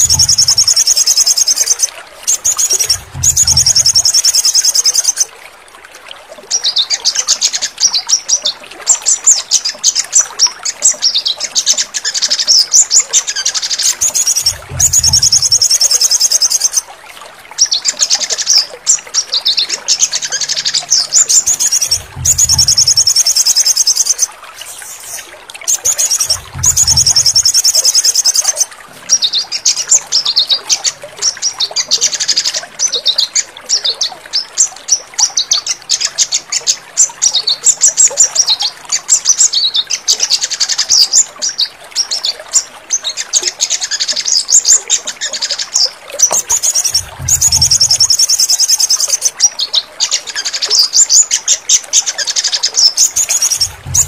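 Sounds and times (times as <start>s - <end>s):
bird song rapid high notes: 0.0s - 5.2s, 13.8s - 16.8s, 20.0s - 30.6s, 46.4s - 49.4s, 52.8s - 54.0s
low thumps: 2.8s - 4.1s, 14.4s - 15.6s, 21.8s - 23.1s, 26.2s - 27.5s, 46.9s - 48.1s, 53.6s - 54.0s.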